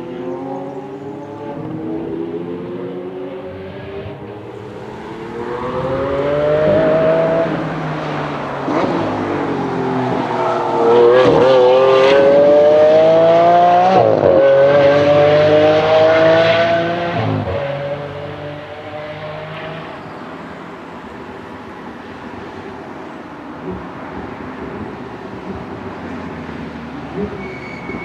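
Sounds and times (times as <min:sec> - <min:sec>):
car engine accelerating hard: 0:00.0 - 0:19.9.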